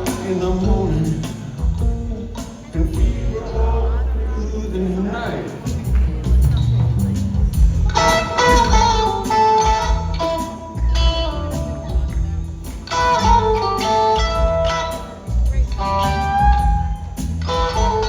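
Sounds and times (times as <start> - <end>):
bass line: 0.0 - 18.0
drums: 0.0 - 18.0
electric guitar: 5.7 - 18.0.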